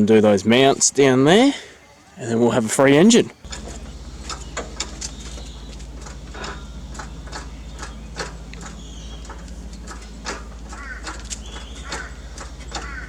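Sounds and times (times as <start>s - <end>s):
steady low hum: 3.4s - 13.0s.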